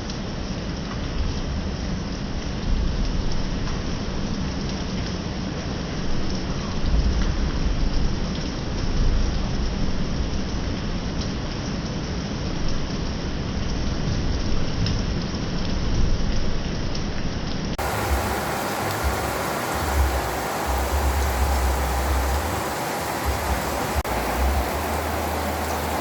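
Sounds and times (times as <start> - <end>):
raindrops ticking close by: 0.0 - 26.0
heavy rain pouring: 0.2 - 26.0
strong wind rumble: 17.8 - 26.0.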